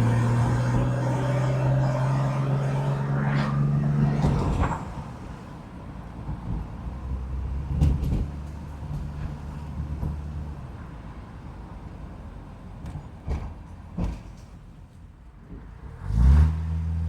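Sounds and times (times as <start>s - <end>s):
car engine running at low revs: 0.0s - 5.5s.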